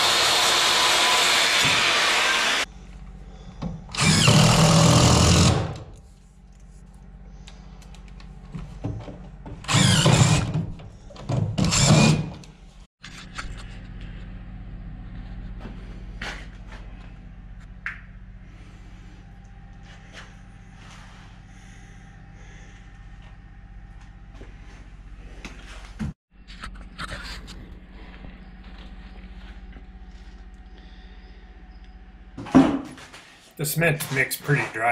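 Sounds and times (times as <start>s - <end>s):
power drill whirring: 0.0s - 2.7s, 3.9s - 5.8s, 9.6s - 10.6s, 11.6s - 12.4s.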